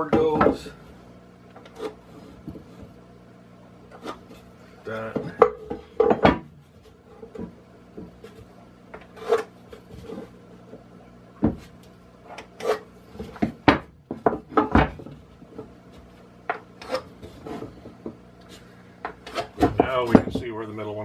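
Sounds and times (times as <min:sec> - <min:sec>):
pencil and square scraping wood: 0:09.0 - 0:10.3, 0:16.8 - 0:17.8, 0:19.2 - 0:19.7
wooden knocks: 0:13.3 - 0:15.7, 0:19.0 - 0:20.5.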